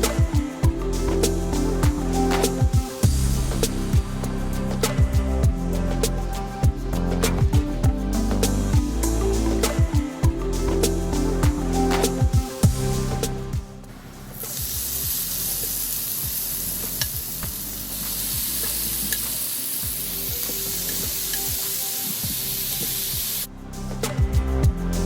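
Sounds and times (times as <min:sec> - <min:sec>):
meat sizzling in hot oil: 0:14.4 - 0:23.5.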